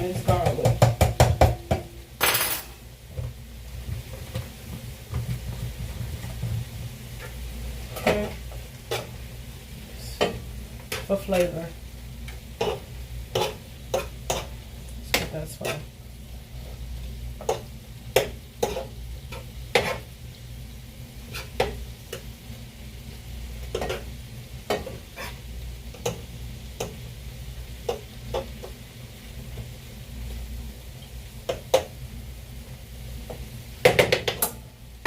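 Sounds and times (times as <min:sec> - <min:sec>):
food sizzling in frying pan: 0:00.0 - 0:35.0
utensil scraping and knocking pan: 0:12.6 - 0:14.5, 0:18.2 - 0:20.1.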